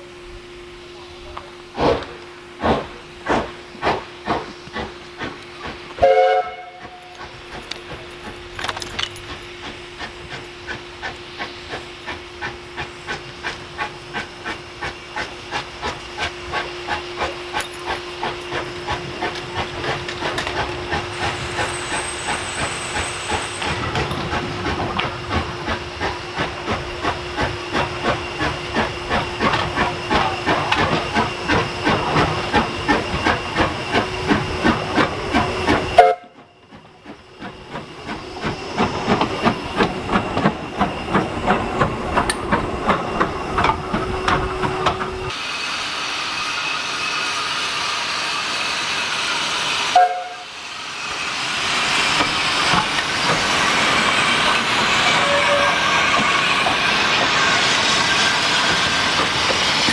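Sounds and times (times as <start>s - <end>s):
steam locomotive chuffing: 0.0s - 59.9s
steam whistle blast: 6.0s - 7.2s, 35.9s - 36.5s, 45.3s - 51.4s, 54.9s - 56.5s.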